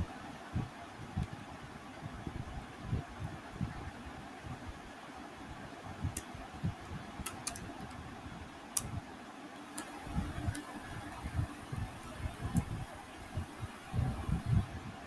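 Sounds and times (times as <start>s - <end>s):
low background hiss: 0.0s - 15.0s
keyboard and mouse clicks: 6.1s - 8.0s, 9.6s - 14.5s.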